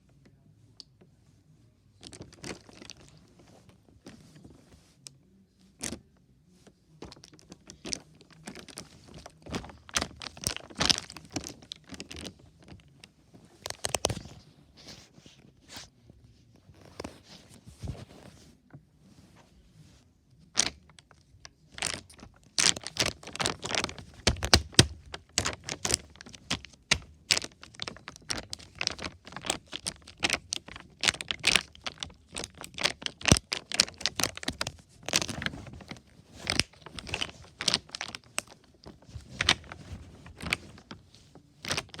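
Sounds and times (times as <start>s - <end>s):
plastic bottle crinkling: 2.0s - 3.2s, 7.0s - 12.8s, 20.6s - 21.1s, 21.8s - 42.0s.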